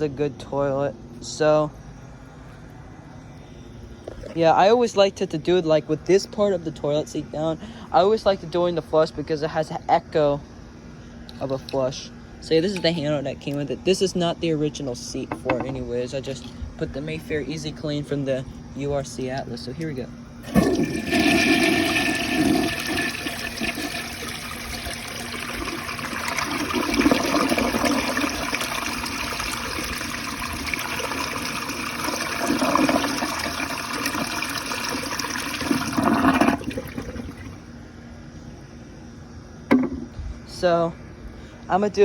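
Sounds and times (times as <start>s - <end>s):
tank refilling hiss: 20.4s - 37.6s
toilet flushing water rushing: 20.4s - 37.6s.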